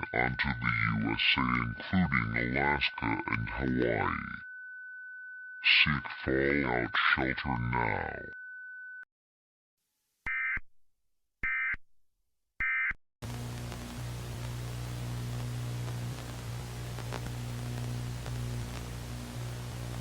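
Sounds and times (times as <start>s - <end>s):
low hum: 13.2s - 20.0s
static hiss: 13.2s - 20.0s.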